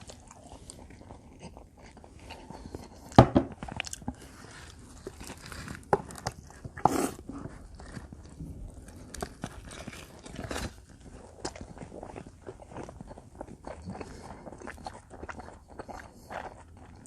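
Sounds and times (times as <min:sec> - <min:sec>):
chewing with wet mouth clicks: 0:00.0 - 0:04.1, 0:07.4 - 0:17.0.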